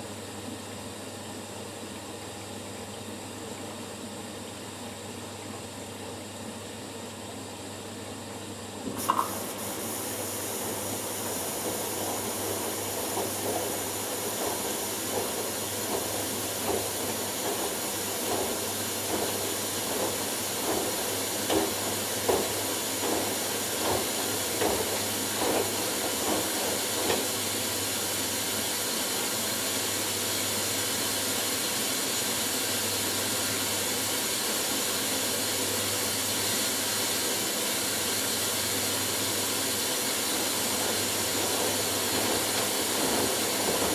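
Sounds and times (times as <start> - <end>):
water running in: 8.8 - 43.9
washing machine drum tumbling: 8.9 - 27.8, 40.6 - 43.9.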